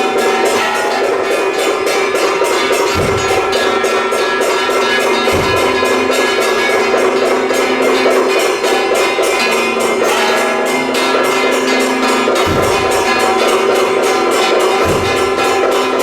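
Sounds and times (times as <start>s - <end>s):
gong and cymbal strikes: 0.0s - 16.0s
steady held tone: 0.0s - 16.0s
deep drum beat: 1.7s - 7.8s, 12.3s - 16.0s.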